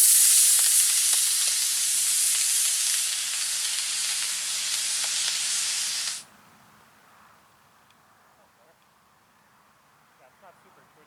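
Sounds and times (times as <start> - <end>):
rocket motor hissing: 0.0 - 6.3.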